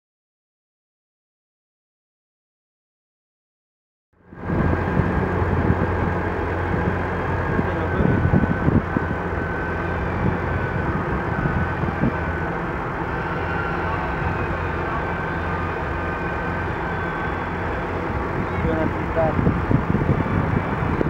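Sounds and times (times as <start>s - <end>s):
faint high whine: 4.2s - 21.0s
tractor diesel engines under load: 4.2s - 21.0s.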